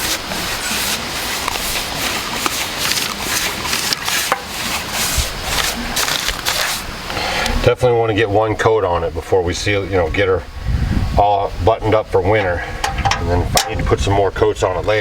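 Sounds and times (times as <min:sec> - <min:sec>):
brush scrubbing on wood: 0:00.0 - 0:07.1.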